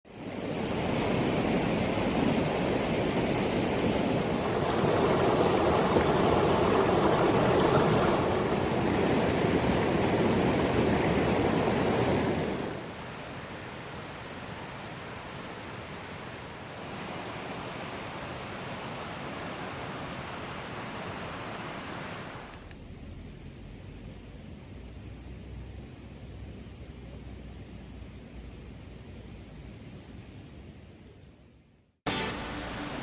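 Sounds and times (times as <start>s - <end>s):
steady rushing noise: 32.1s - 33.0s.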